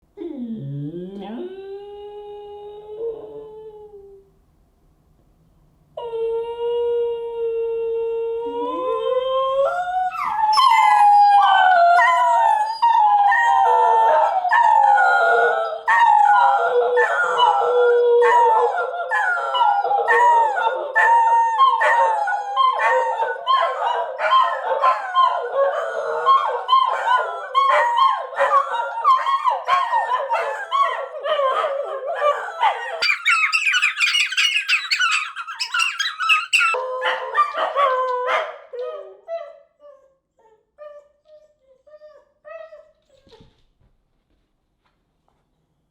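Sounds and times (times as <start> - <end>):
dogs howling: 8.4 - 39.6
dogs yipping and whining: 9.6 - 43.4.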